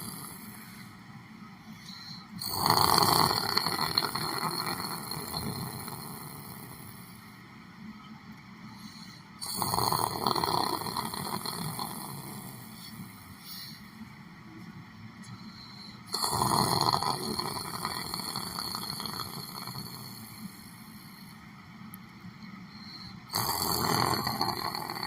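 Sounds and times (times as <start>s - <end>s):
person snoring: 0.0s - 0.6s, 2.4s - 7.0s, 9.4s - 12.9s, 16.1s - 20.8s, 23.3s - 25.0s.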